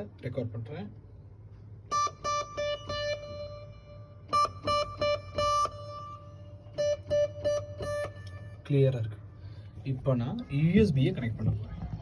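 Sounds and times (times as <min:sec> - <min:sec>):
synthesizer plucked repeated notes: 0:01.9 - 0:08.6.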